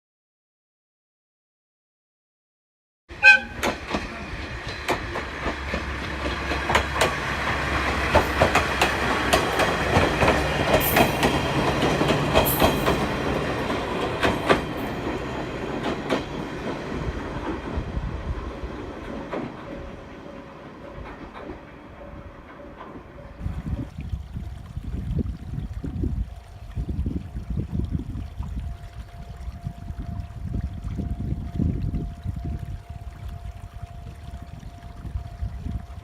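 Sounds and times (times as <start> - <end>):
diesel railcar engine humming: 3.1 - 23.6
train wheels clicking over rail joints: 3.4 - 17.9, 18.6 - 23.4.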